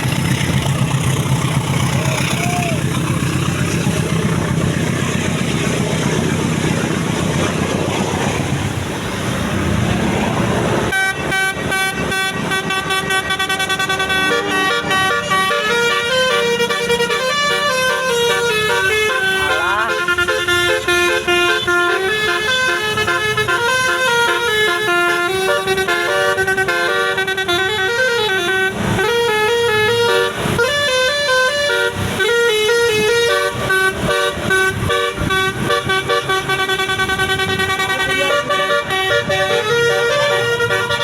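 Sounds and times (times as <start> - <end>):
bus multi-tone horn playing a tune: 10.9 - 41.0.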